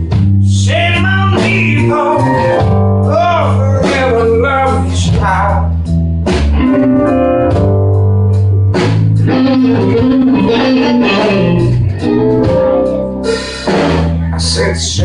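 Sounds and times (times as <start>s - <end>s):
bass guitar: 0.0s - 15.0s
drums: 0.0s - 15.0s
electric guitar lead lines: 6.0s - 15.0s.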